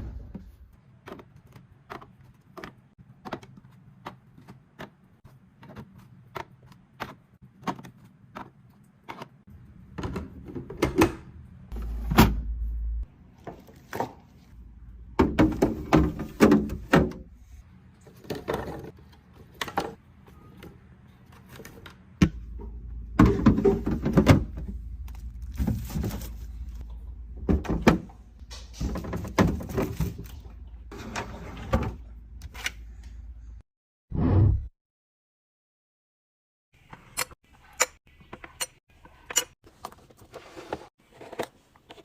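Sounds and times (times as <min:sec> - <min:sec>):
containers thunking and clattering: 0:15.1 - 0:17.3, 0:18.0 - 0:20.0, 0:21.6 - 0:32.1.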